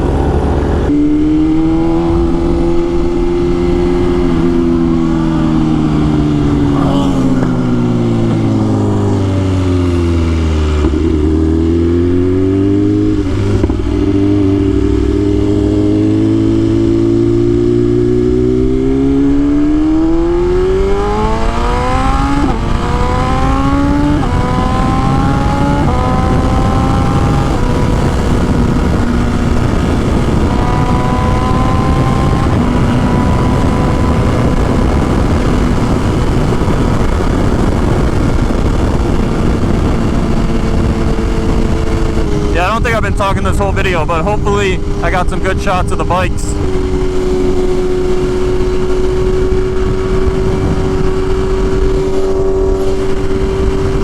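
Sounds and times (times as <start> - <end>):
motorcycle engine revving: 0.0 - 54.0
wind rush: 0.0 - 54.0.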